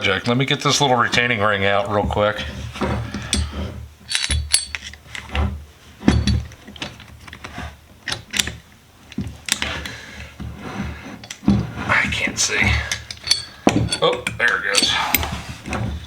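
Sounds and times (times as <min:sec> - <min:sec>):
hand tool clicking and scraping metal: 0:03.1 - 0:05.4, 0:12.2 - 0:16.0.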